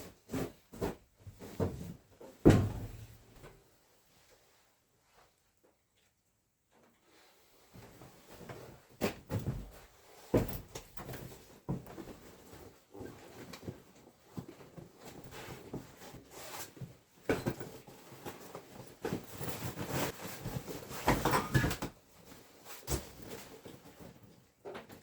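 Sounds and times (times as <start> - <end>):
rustling of gear and clothing: 0.0 - 5.8, 6.7 - 25.0.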